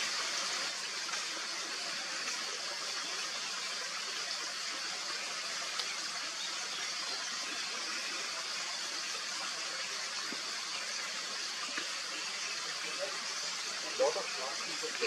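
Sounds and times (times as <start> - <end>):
outdoor background hiss: 0.0 - 15.0
faint tick: 5.7 - 5.9.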